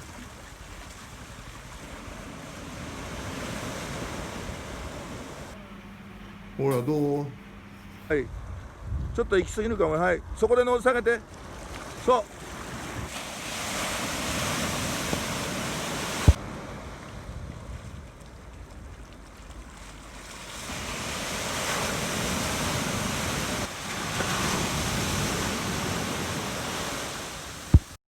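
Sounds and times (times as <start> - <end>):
waves rushing and washing: 0.0 - 5.6, 11.3 - 18.2, 19.7 - 28.0
wind buffeting microphone: 8.3 - 10.5.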